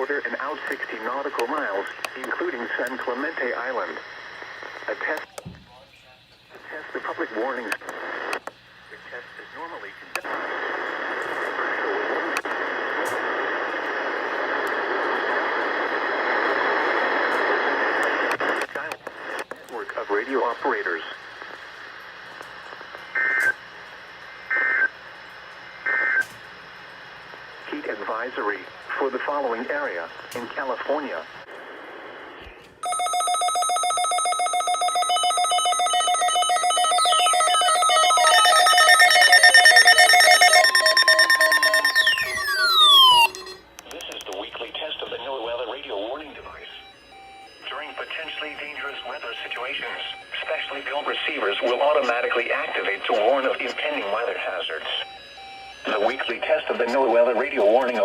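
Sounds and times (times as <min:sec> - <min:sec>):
radio static hiss: 0:00.0 - 0:32.8, 0:38.0 - 0:58.0
overlapping electronic alarm beeps: 0:32.8 - 0:43.6, 0:46.6 - 0:58.0
steady electronic tone: 0:36.9 - 0:43.7
tone sweeping down: 0:38.6 - 0:43.6.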